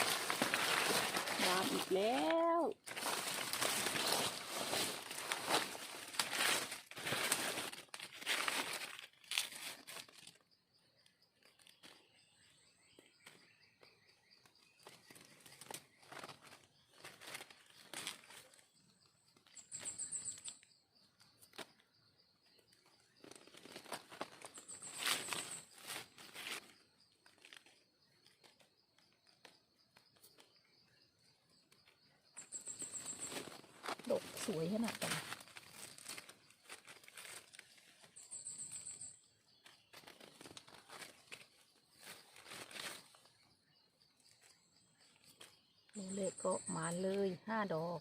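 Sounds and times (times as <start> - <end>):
dry leaves rustling and crunching: 0.0 - 10.4, 14.8 - 18.6, 23.2 - 28.6, 32.4 - 38.3, 39.7 - 43.2.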